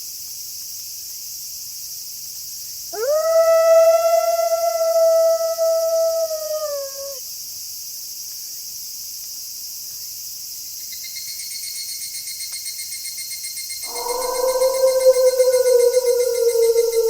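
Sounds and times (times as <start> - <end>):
night insects chorus: 2.6 - 7.2, 10.1 - 17.0
wolf howling: 3.0 - 7.2, 13.8 - 17.0
pulsing insect trill: 13.7 - 17.0.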